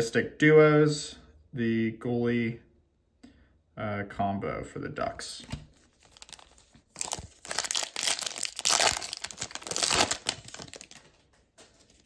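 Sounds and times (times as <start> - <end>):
foil wrapper crinkling and tearing: 5.8 - 11.2.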